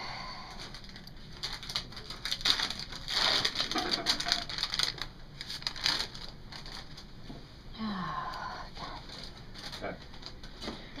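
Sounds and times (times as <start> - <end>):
packaging crinkling: 0.6 - 7.1, 9.1 - 10.7.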